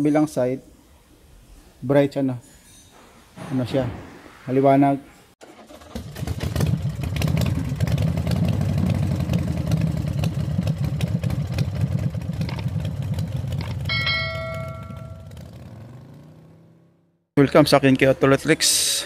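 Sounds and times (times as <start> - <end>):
engine running: 5.4 - 16.6
bright chime: 13.9 - 15.3.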